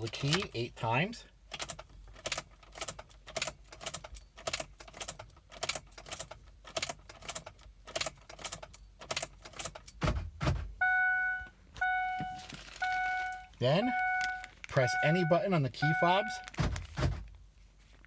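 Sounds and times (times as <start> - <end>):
dashboard chime: 10.8 - 16.5.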